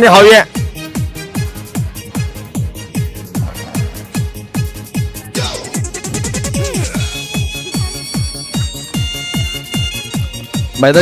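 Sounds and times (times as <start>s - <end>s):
electronic dance music: 2.7s - 8.5s.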